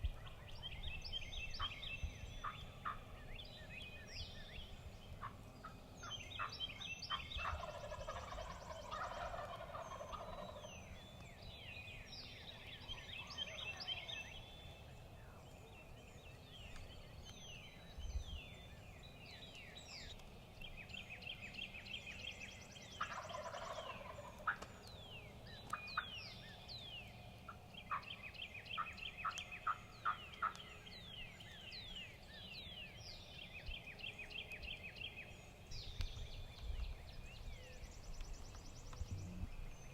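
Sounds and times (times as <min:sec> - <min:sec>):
songbirds chirping and trilling: 0:00.0 - 0:39.9
turkey gobbling: 0:07.4 - 0:10.7, 0:23.0 - 0:24.6, 0:28.8 - 0:30.6.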